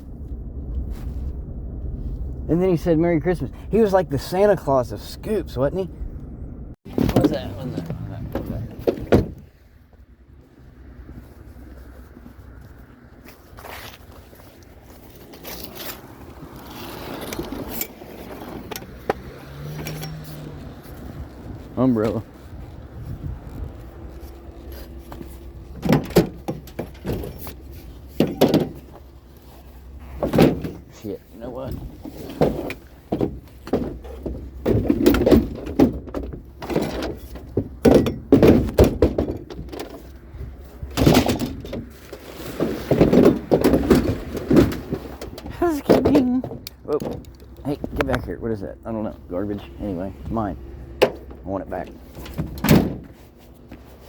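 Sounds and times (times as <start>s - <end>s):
vehicle engine low rumble: 0.0s - 54.0s
thumps and knocks: 25.1s - 29.0s, 31.7s - 40.1s, 42.6s - 48.2s, 51.0s - 51.4s
sharp clicks and knocks: 43.0s - 48.2s, 51.0s - 51.4s.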